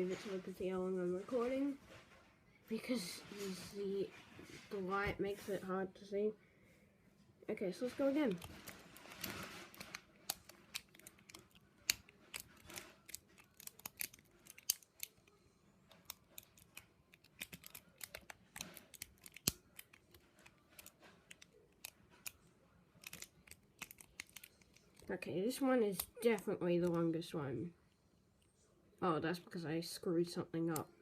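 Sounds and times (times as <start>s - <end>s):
lock pick clicking and scraping: 9.2s - 15.2s, 16.0s - 22.4s, 23.0s - 25.0s.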